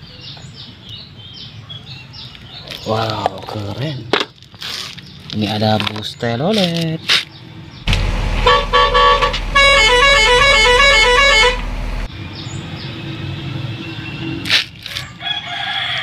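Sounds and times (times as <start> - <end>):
bus horn toots and tune: 7.9 - 12.1.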